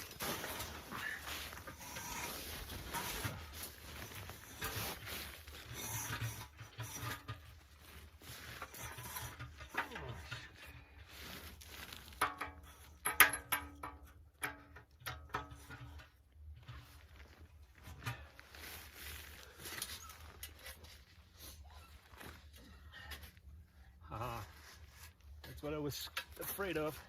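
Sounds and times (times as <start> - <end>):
metal stove clicks and knocks: 12.2 - 16.0.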